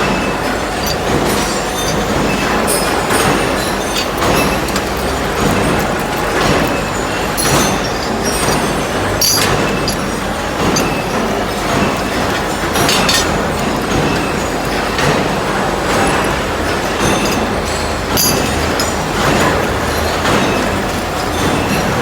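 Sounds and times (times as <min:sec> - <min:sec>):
drilling machine running: 0:00.0 - 0:22.0
sharp metal clank: 0:07.4 - 0:14.2, 0:17.0 - 0:20.6.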